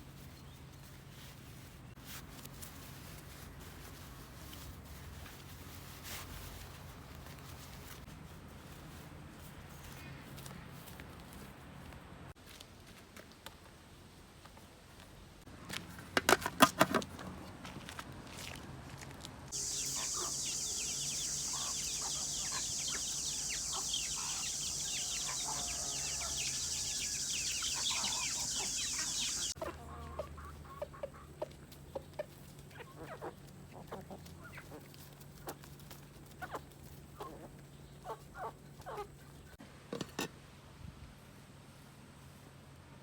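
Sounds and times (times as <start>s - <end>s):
high-pitched hiss: 19.6s - 29.6s
chickens clucking: 19.6s - 34.9s.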